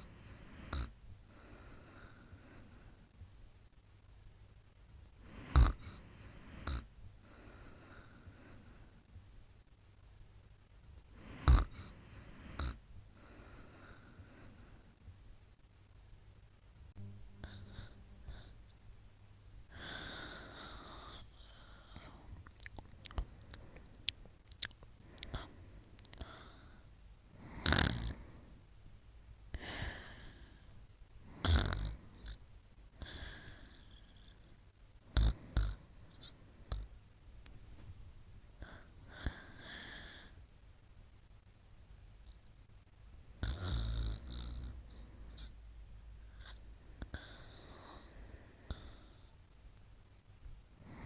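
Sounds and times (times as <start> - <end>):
person snoring: 0.0 - 3.0, 5.2 - 8.8, 11.2 - 14.8, 17.0 - 18.6, 27.4 - 28.5, 31.3 - 32.4, 35.2 - 35.8, 43.4 - 45.5
soft breathing: 0.0 - 3.3, 5.2 - 9.2, 11.0 - 16.0, 16.9 - 18.8, 19.6 - 28.7, 29.5 - 36.9, 37.8 - 40.5, 46.2 - 49.4, 50.8 - 51.0.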